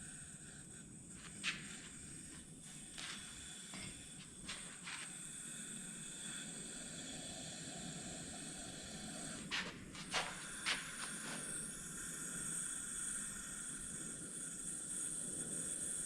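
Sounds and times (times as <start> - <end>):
compressed air hissing from gun: 0.0 - 6.8, 8.0 - 14.0.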